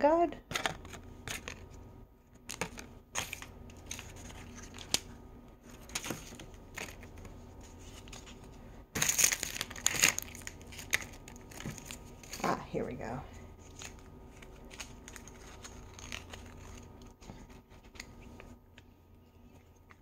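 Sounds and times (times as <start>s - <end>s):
toy packaging crinkling: 9.0s - 12.6s, 13.6s - 17.1s.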